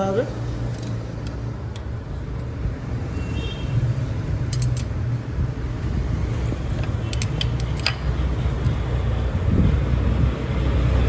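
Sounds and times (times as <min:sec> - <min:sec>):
road traffic rumble: 0:00.0 - 0:11.0
spanner clicking metallically: 0:04.4 - 0:05.0, 0:06.8 - 0:08.1.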